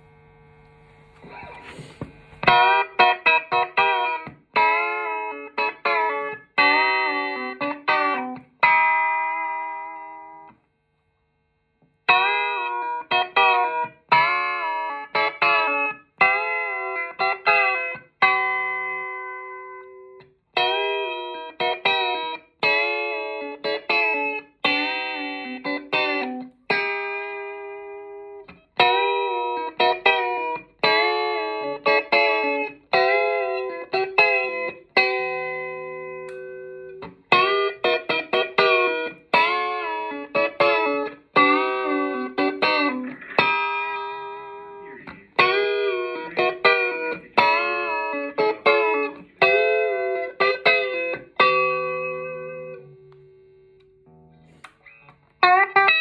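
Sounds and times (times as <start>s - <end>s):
electric guitar solo: 1.0s - 10.6s, 12.1s - 56.0s.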